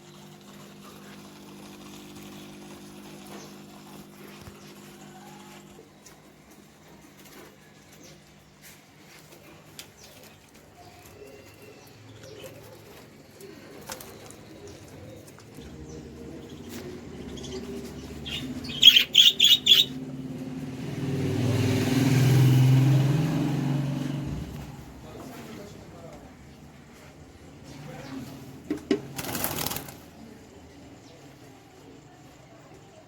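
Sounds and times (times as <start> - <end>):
small birds chirping: 6.8 - 20.6
pigeons cooing: 10.9 - 20.0
vehicle passing: 15.6 - 29.9.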